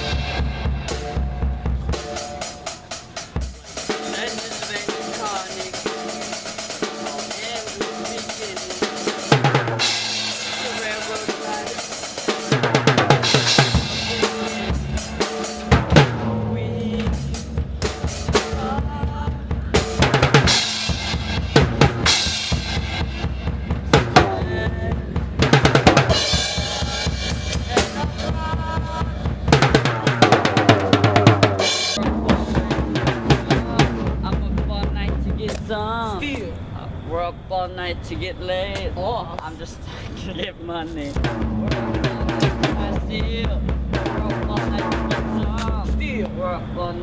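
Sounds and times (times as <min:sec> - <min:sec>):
bass line: 0:00.0 - 0:06.2, 0:08.9 - 0:36.2, 0:41.2 - 0:46.8
drum kit beat: 0:00.0 - 0:36.0, 0:41.1 - 0:46.6.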